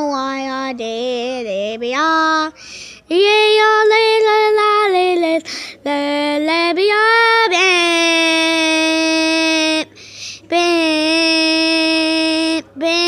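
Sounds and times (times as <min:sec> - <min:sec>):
singer breathing in: 0:02.5 - 0:03.1, 0:05.4 - 0:05.8, 0:09.9 - 0:10.5.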